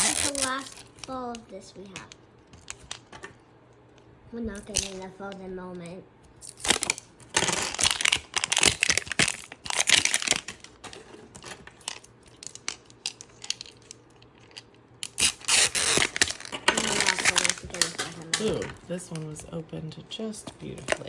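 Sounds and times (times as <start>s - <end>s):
plastic wrapping crinkling and tearing: 0.0s - 3.1s, 4.6s - 5.4s, 6.4s - 18.8s.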